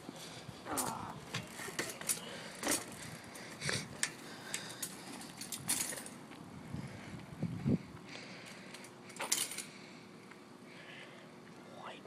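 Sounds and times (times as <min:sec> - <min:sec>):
bike rattling: 0:00.0 - 0:07.2.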